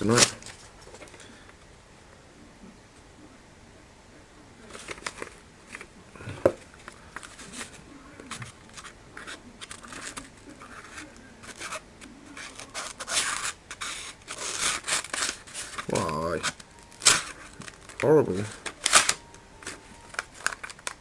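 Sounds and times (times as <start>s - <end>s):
paper rustling: 4.6s - 5.9s, 6.7s - 21.0s
knife cutting paper: 7.4s - 17.4s.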